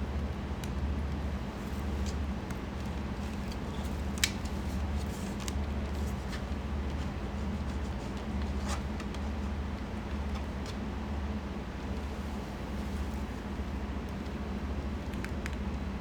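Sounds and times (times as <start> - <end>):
low hum with faint hiss: 0.0 - 16.0.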